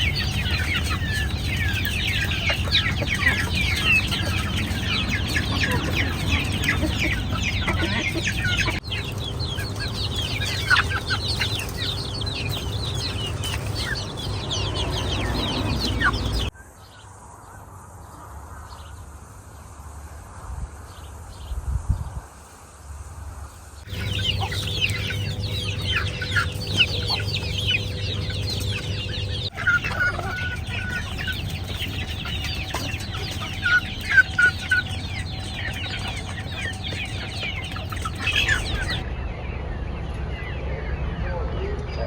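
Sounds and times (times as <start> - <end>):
chickens clucking: 0.0 - 16.5, 23.3 - 39.1
rapid high peeps: 23.9 - 39.0.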